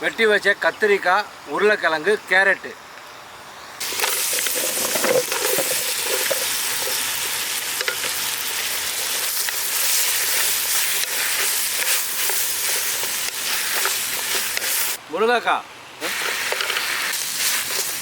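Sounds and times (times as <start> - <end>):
vegetables sizzling in hot oil: 3.8 - 15.0, 16.0 - 18.0.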